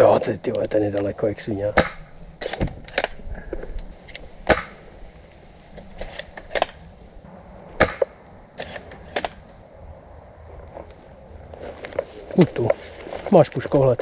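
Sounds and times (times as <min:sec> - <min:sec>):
airsoft gun shots: 0:01.8 - 0:02.7, 0:04.5 - 0:04.8, 0:07.8 - 0:08.2.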